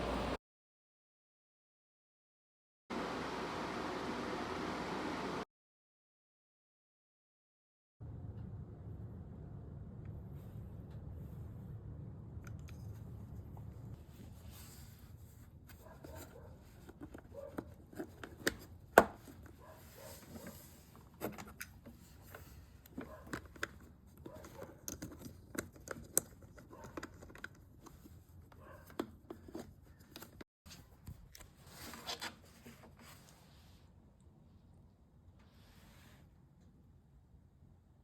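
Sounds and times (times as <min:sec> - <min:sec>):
handling clicks and taps: 0:21.2 - 0:30.4.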